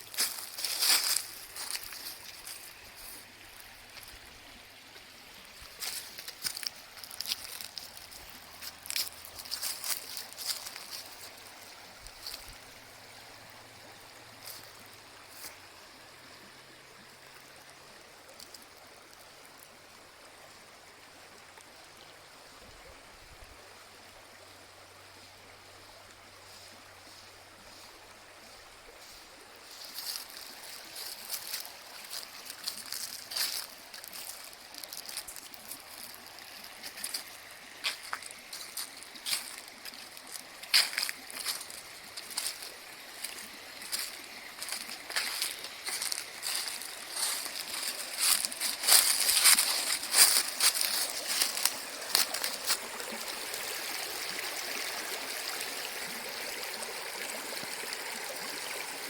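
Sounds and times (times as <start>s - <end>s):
soft rush of water: 0.0s - 59.0s
crackles and splashy clicks: 5.8s - 11.0s.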